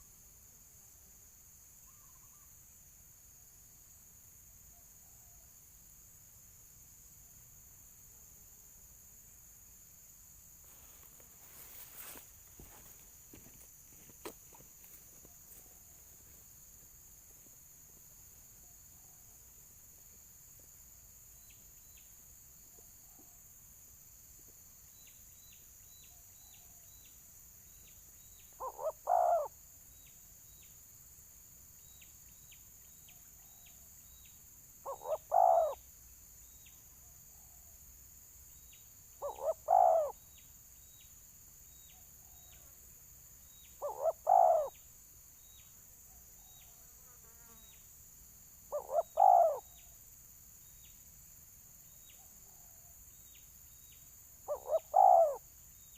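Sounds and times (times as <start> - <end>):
faint insect ticking: 0.0 - 55.9
dove cooing: 28.6 - 29.5, 34.8 - 35.8, 39.2 - 40.2, 43.8 - 44.8, 48.7 - 49.7, 54.5 - 55.4.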